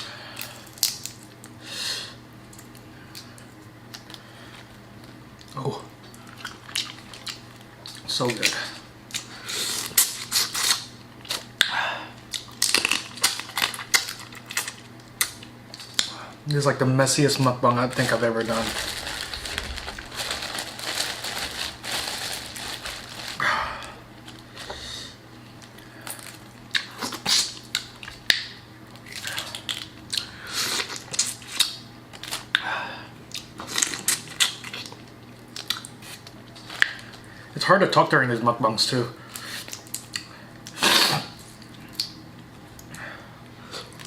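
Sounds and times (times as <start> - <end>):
shells cracking and crunching: 0.4 - 1.4, 12.3 - 16.1, 18.0 - 23.4.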